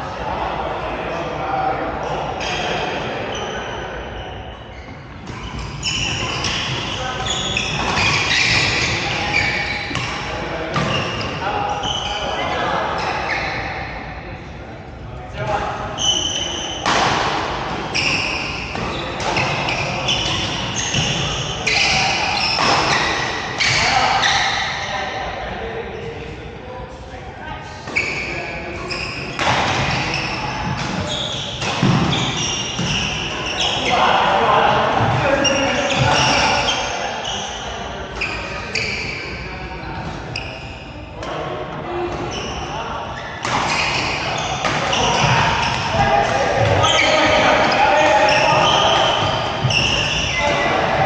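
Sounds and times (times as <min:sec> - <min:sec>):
shoes squeaking on hall floor: 0:02.0 - 0:14.2, 0:15.4 - 0:26.4, 0:27.4 - 0:51.0.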